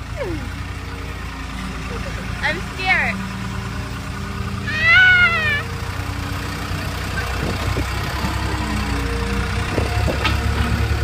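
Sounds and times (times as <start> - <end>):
loader engine running: 0.0 - 11.0
woman screaming: 4.6 - 5.7.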